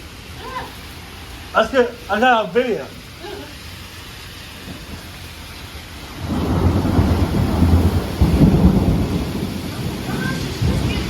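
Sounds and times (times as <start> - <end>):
steady rain: 0.0 - 11.0
rolling thunder: 6.2 - 11.0.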